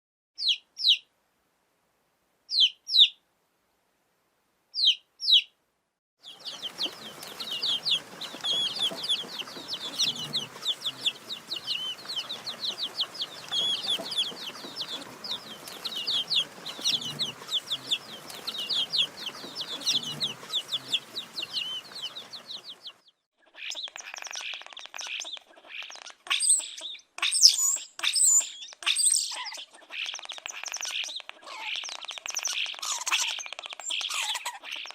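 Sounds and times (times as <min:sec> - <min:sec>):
baby chicks peeping: 0:00.4 - 0:01.1, 0:02.5 - 0:03.2, 0:04.8 - 0:05.5, 0:06.2 - 0:34.9
background hiss: 0:00.7 - 0:22.9.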